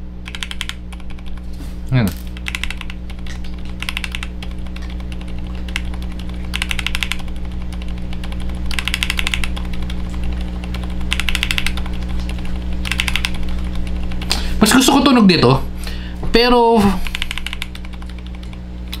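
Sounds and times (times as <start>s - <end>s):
steady low hum: 0.0s - 19.0s
mechanical keyboard clicks: 0.2s - 1.4s, 2.4s - 14.3s, 17.1s - 19.0s.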